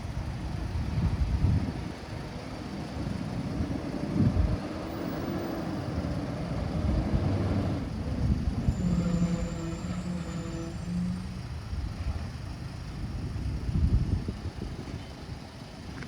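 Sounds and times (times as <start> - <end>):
garbage truck engine rumbling: 0.1 - 14.2
steady tone: 6.4 - 11.6.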